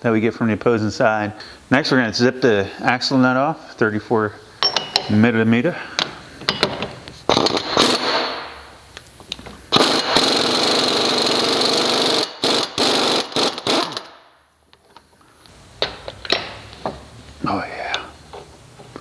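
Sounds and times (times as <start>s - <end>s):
impact wrench hammering: 4.6s - 5.2s, 6.0s - 8.6s, 9.7s - 14.2s, 15.8s - 17.0s.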